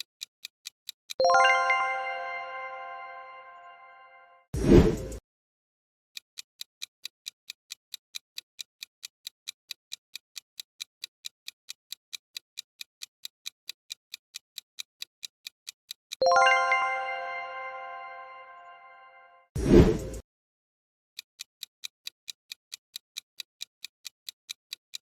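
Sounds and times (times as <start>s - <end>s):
clock-like ticking: 0.0s - 3.8s, 4.6s - 5.2s, 6.4s - 18.2s, 21.2s - 25.0s
bright bell-like chime: 1.2s - 4.5s, 16.2s - 19.5s.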